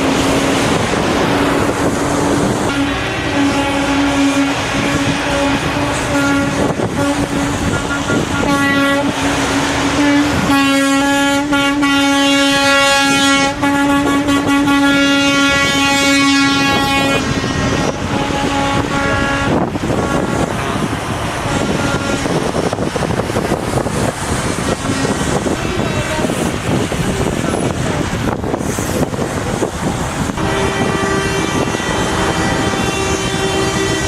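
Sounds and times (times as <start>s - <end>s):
engines running: 0.0s - 11.5s
truck air horns blasting: 0.0s - 23.1s, 30.3s - 34.0s.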